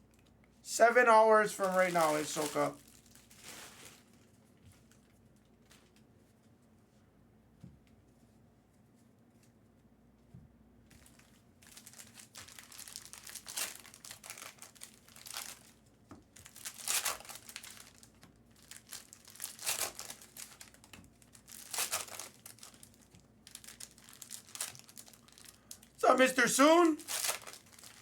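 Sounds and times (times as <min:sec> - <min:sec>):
plastic wrappers crinkling and tearing: 0:00.9 - 0:06.0, 0:11.0 - 0:28.0.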